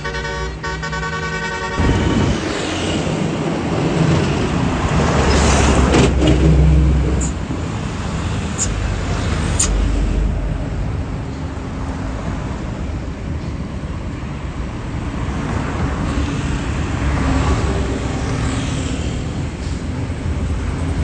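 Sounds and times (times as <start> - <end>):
multi-tone musical bus horn: 0.0 - 2.6
bus engine and tyres rumbling: 0.0 - 21.0
short sharp clicks: 9.5 - 9.8.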